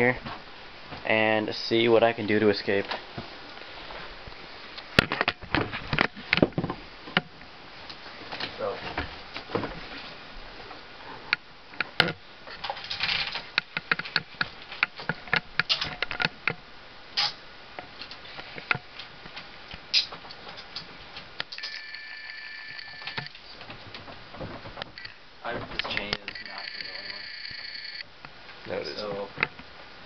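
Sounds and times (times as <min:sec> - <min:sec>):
steady high tone: 0:21.6 - 0:23.3, 0:26.2 - 0:28.0.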